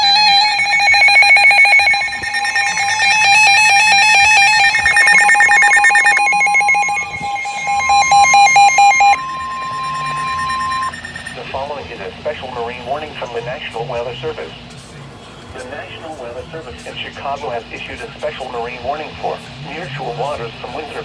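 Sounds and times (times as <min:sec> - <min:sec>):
steady alert tone: 0:00.0 - 0:11.4
warbling digital data bursts: 0:00.0 - 0:11.4
rapid electronic alarm beeps: 0:00.0 - 0:11.7.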